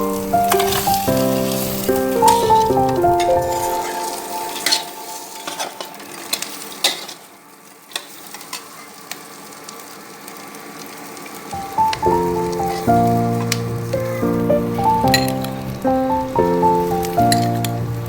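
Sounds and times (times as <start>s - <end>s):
background music: 0.0s - 6.4s, 11.6s - 18.0s
food sizzling in a pan: 0.0s - 18.0s.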